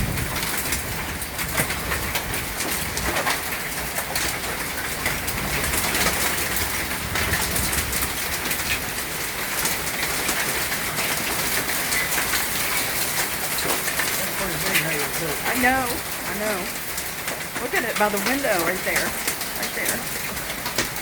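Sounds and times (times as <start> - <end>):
hail pelting surfaces: 0.0 - 21.0
heavy rain hissing: 10.5 - 21.0.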